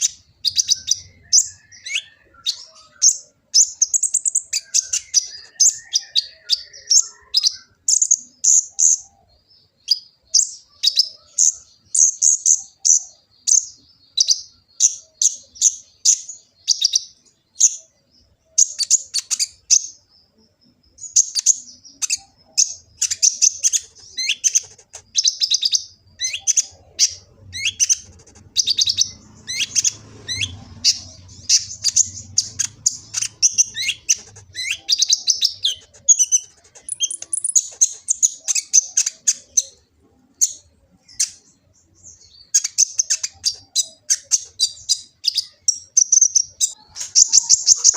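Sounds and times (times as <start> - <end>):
sunbird singing chirps and twitters: 0.0 - 47.9.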